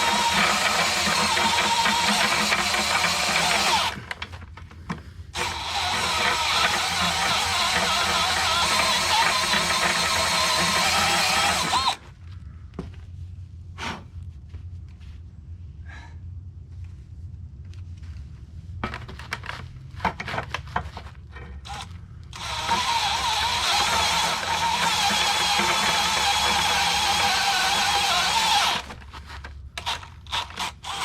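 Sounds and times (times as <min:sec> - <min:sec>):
electric drill squealing in steel: 0:05.4 - 0:12.0.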